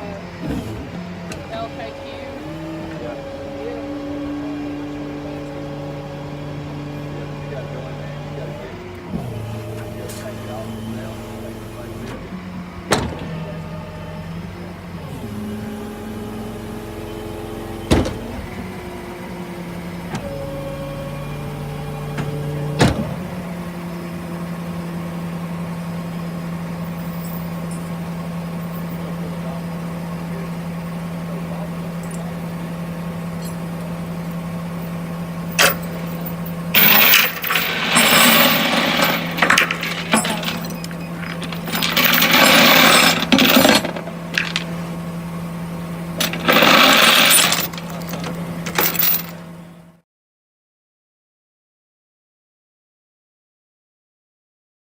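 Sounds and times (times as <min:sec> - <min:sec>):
truck engine idling: 0:00.0 - 0:50.0
metal rattling and clanking: 0:34.7 - 0:45.0, 0:46.2 - 0:49.4.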